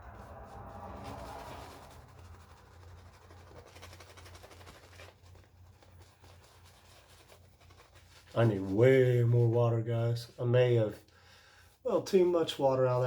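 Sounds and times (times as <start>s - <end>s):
steady low hum: 0.0s - 3.8s
shaving brush bristles scratching: 0.0s - 9.6s.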